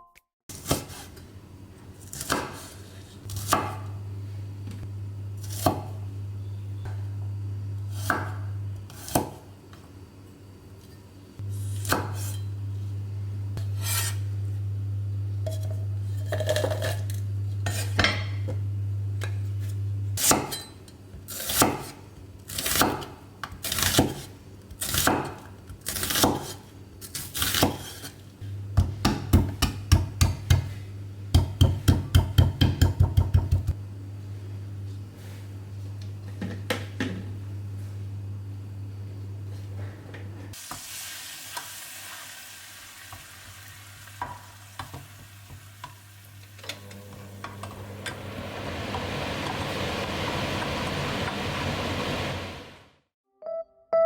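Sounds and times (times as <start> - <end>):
knife chopping on cutting board: 2.1 - 2.7, 3.3 - 3.9, 5.5 - 6.0, 7.9 - 9.4, 11.8 - 12.4, 22.6 - 28.1, 28.8 - 33.8
low steady hum: 3.3 - 9.0, 10.6 - 20.2, 28.4 - 40.6.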